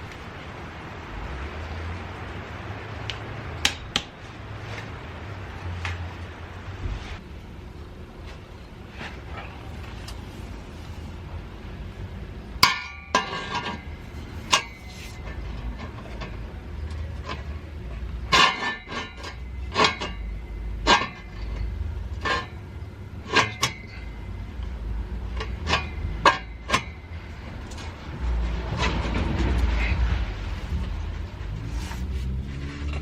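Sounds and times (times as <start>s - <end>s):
metallic clanks and knocks: 12.6s - 17.6s.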